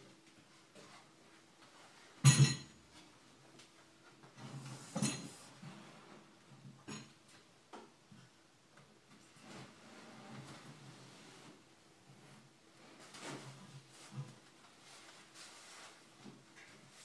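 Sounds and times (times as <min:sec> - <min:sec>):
rustling: 0:12.2 - 0:17.0.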